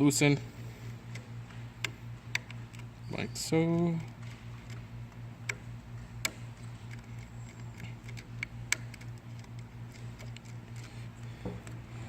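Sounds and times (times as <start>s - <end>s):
steady hum: 0.0s - 12.0s
screwdriver clicks and ticks: 6.2s - 10.9s.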